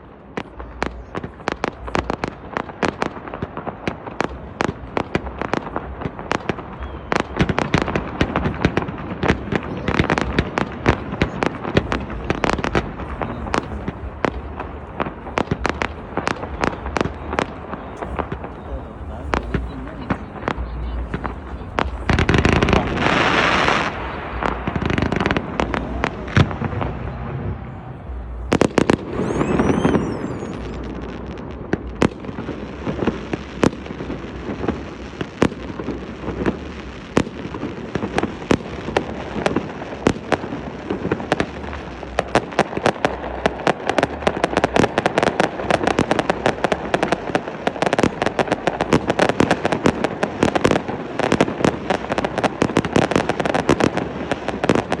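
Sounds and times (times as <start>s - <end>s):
rapid crackling firework pops: 0.0s - 27.6s, 28.2s - 55.0s.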